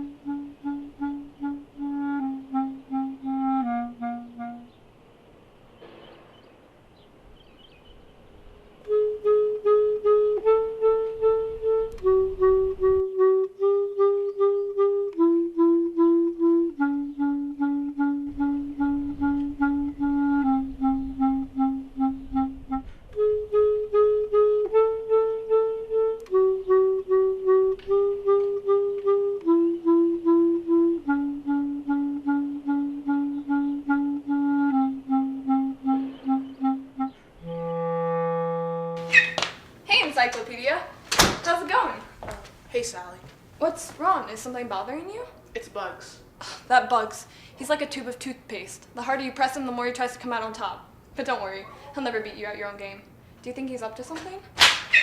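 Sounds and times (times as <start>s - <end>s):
woodwind melody: 0.0s - 5.0s, 8.3s - 39.5s.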